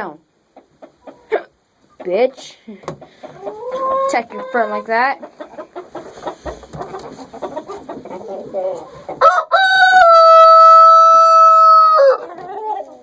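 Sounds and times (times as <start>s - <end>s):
chickens clucking: 0.4s - 13.0s
rooster crowing: 9.2s - 12.2s.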